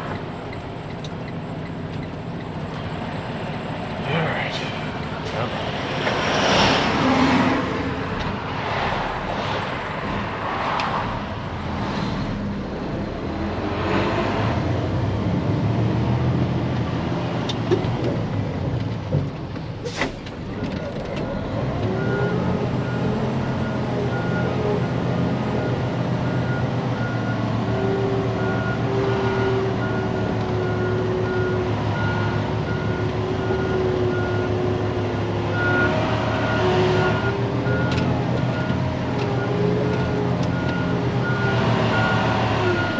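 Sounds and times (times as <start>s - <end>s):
diesel truck engine running: 17.9s - 42.9s
truck reversing beeper: 21.9s - 42.9s.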